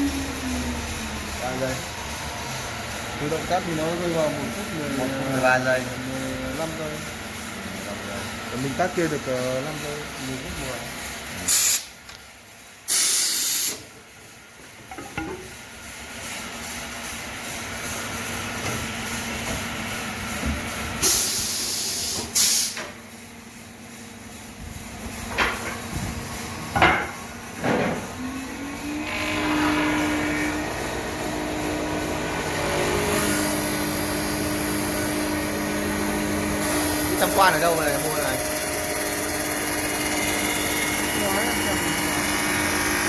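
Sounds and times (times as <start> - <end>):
motor humming: 0.0 - 10.8, 25.9 - 43.0
lathe hissing: 27.4 - 43.0.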